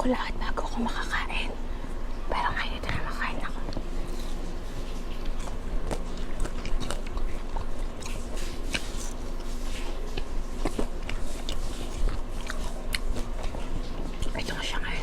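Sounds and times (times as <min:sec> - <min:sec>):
steady low hum: 0:00.0 - 0:15.0
person chewing food: 0:03.2 - 0:15.0.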